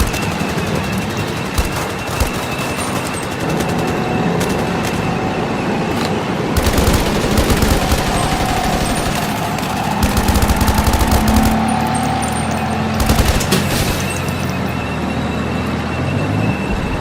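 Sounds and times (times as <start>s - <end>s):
automatic gunfire bursts: 0.0s - 4.6s, 6.6s - 11.7s, 13.0s - 13.7s.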